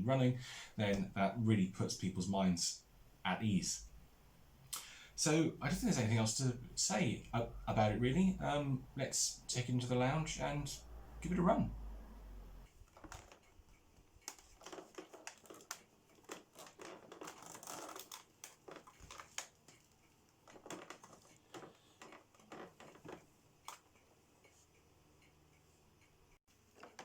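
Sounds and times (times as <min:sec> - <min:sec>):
faint clicks and knocks: 0:12.6 - 0:27.0
rustling of things handled: 0:12.7 - 0:24.8.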